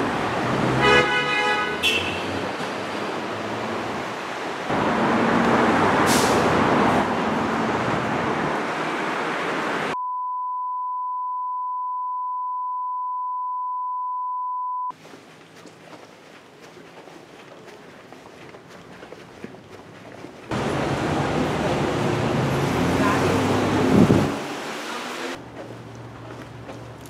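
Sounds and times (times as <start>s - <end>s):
traffic noise: 0.0s - 10.0s, 14.9s - 27.0s
electronic beep tone: 10.0s - 14.9s.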